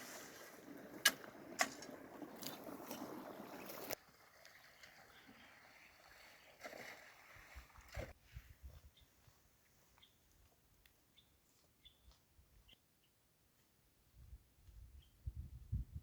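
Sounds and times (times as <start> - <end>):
moving water splashing: 0.0 - 8.2.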